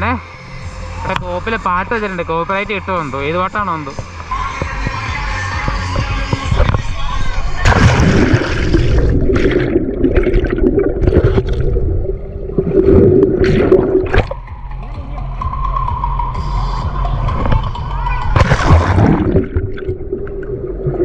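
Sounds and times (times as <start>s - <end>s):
water sloshing and splashing: 7.6s - 14.5s, 17.3s - 21.0s.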